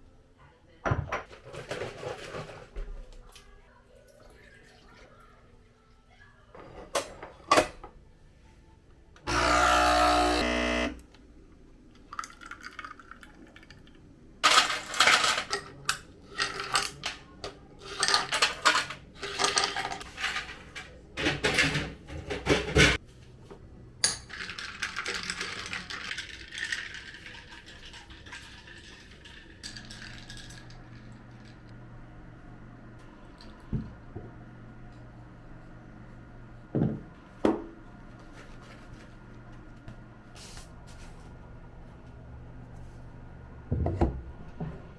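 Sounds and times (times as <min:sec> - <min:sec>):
dishes and pots clattering: 0:00.9 - 0:02.9, 0:17.8 - 0:23.0
loud buzz: 0:09.3 - 0:11.0.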